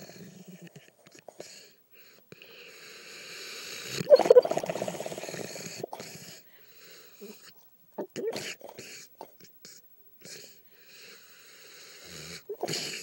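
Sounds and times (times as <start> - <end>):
dog snoring: 0.0 - 13.0.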